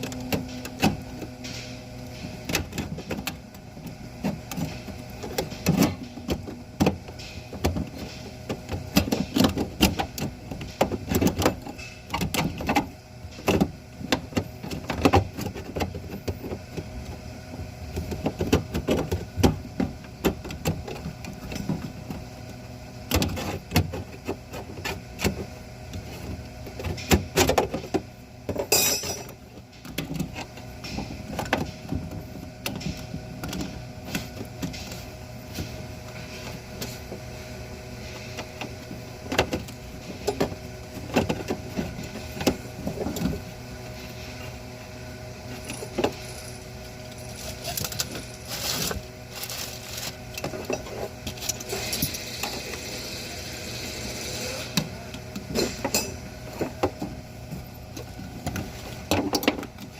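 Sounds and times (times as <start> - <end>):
steady low hum: 0.0 - 59.9
clicks and knocks of handling: 17.9 - 37.2.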